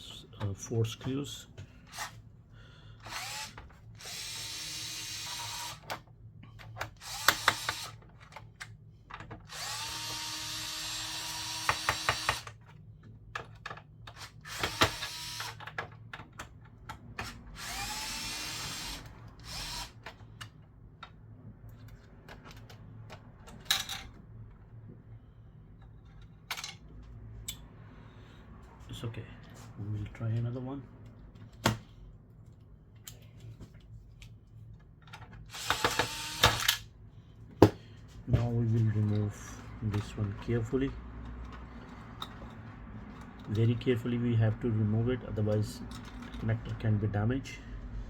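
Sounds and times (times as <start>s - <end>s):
electric screwdriver whining: 3.0s - 5.9s, 7.0s - 8.0s, 9.5s - 12.6s, 14.2s - 15.6s, 17.2s - 20.0s, 35.5s - 36.8s.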